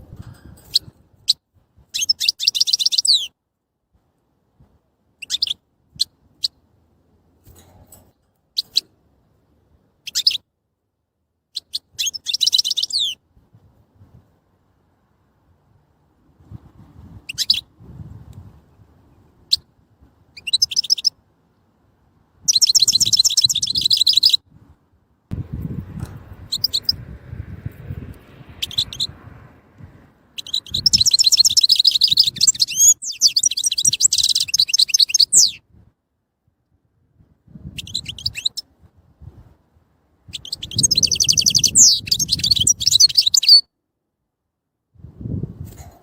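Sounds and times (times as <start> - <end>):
goldfinch singing: 1.9 - 3.3, 5.2 - 5.6, 10.0 - 10.4, 11.6 - 13.2, 20.4 - 21.1, 22.5 - 24.4, 26.5 - 27.0, 28.6 - 29.1, 30.4 - 35.6, 40.3 - 43.7
faint low rumble: 24.6 - 30.8.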